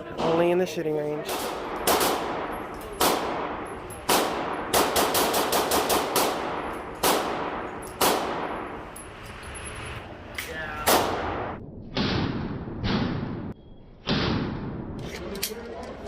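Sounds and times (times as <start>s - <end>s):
gunshots with reverberation: 1.3s - 9.0s, 10.8s - 15.3s.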